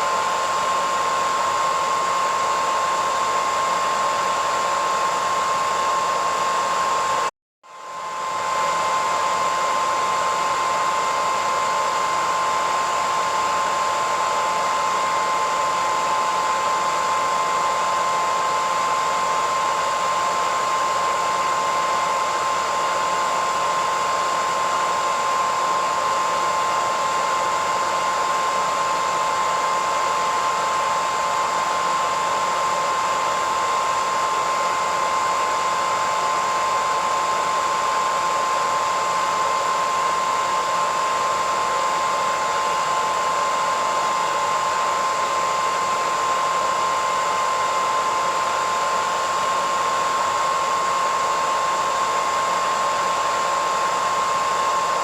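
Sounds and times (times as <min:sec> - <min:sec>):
hairdryer running: 0:00.0 - 0:55.0.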